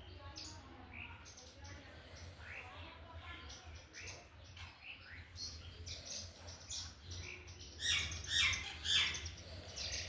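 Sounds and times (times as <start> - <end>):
small birds chirping: 0.0 - 10.0.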